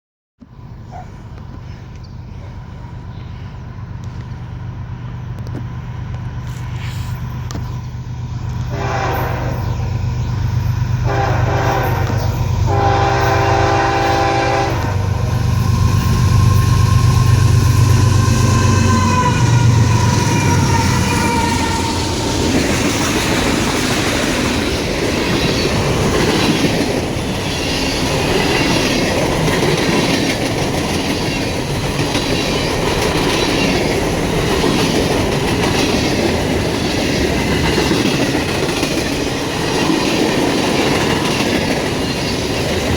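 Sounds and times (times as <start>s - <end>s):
locomotive engine passing: 0.5s - 42.9s
train horn blasts: 8.7s - 10.0s, 11.0s - 22.5s
train wheels clattering on rails: 10.3s - 42.9s.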